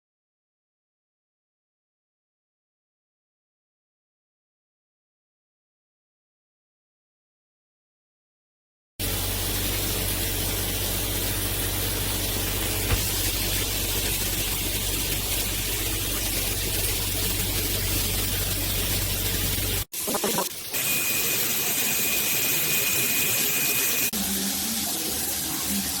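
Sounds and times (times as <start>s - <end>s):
shower water spraying: 9.0s - 26.0s.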